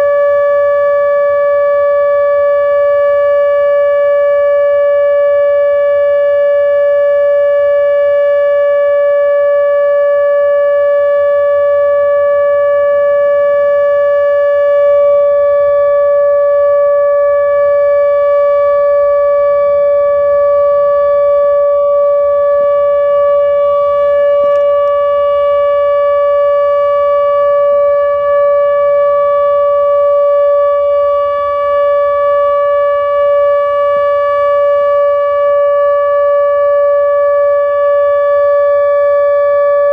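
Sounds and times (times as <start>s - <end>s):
steady warning siren: 0.0s - 39.9s.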